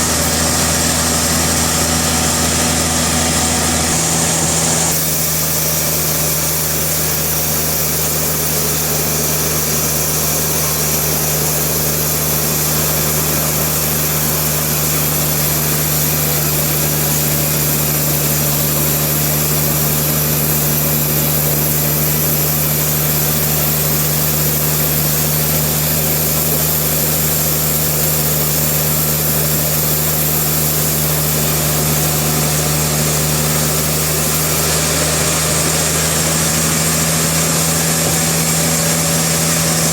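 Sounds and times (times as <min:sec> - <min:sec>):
sawmill machinery humming: 0:00.0 - 0:39.9.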